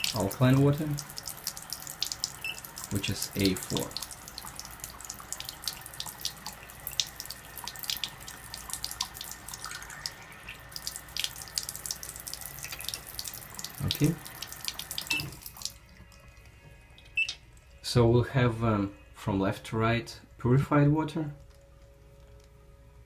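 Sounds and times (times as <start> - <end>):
water running into a container: 0.0 - 16.4.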